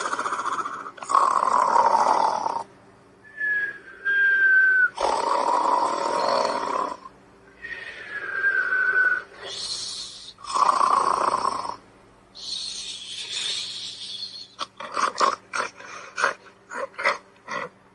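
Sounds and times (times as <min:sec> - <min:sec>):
cartoon snoring: 0:00.0 - 0:02.7, 0:04.9 - 0:07.1, 0:09.4 - 0:11.8, 0:14.7 - 0:17.7
whistled breath: 0:03.2 - 0:05.0, 0:07.5 - 0:10.4, 0:12.4 - 0:14.6.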